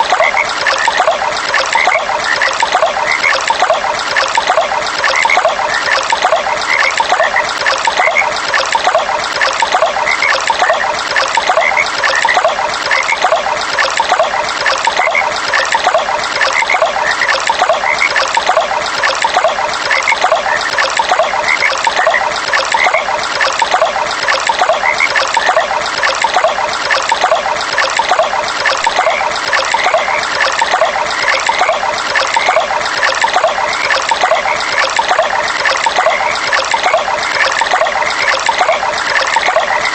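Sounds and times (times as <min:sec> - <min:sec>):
frogs calling: 0:00.0 - 0:39.9
water running over stream bed: 0:00.0 - 0:39.9.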